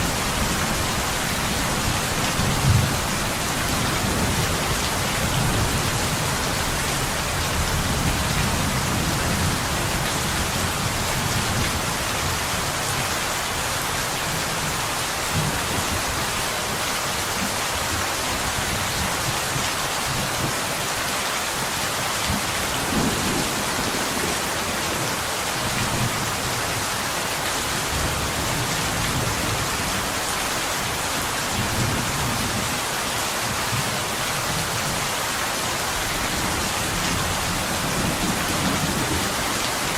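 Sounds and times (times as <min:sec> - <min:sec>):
rain on a window: 0:00.0 - 0:39.9.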